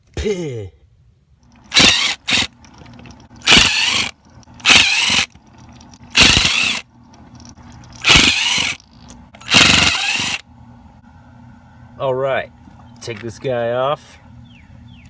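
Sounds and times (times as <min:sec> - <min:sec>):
cordless drill bursts: 0:01.6 - 0:02.5, 0:03.4 - 0:05.3, 0:06.1 - 0:06.8, 0:08.0 - 0:08.8, 0:09.4 - 0:10.4.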